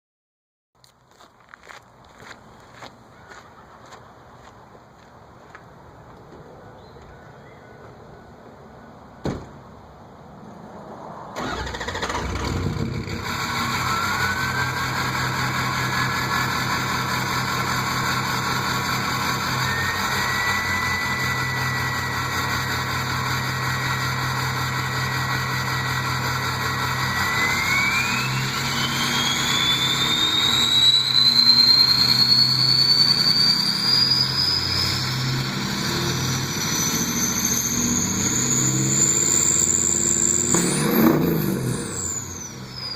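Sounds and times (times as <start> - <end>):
diesel engine running: 11.4 - 42.9
turbocharger whistle: 11.4 - 42.9.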